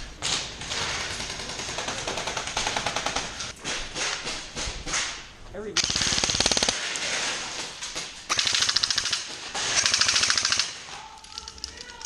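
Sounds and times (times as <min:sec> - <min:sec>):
airsoft guns firing bursts: 0:00.6 - 0:03.6, 0:05.8 - 0:07.3, 0:08.3 - 0:12.0.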